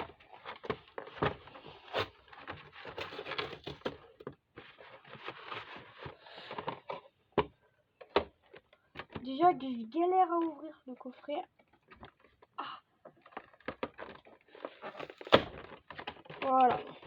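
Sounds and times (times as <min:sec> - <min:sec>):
cardboard box scraping and rustling: 0:00.2 - 0:07.1, 0:13.9 - 0:16.6.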